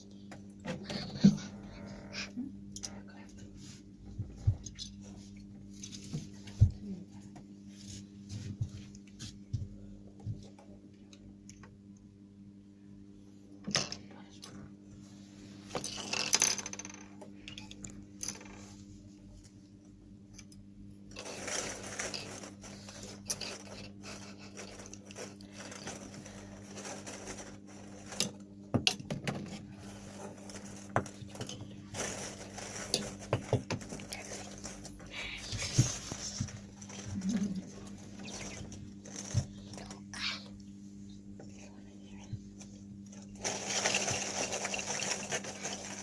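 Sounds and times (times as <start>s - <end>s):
low electrical hum: 0.0s - 46.0s
small objects clattering: 21.1s - 28.4s, 29.9s - 39.8s, 43.1s - 46.0s.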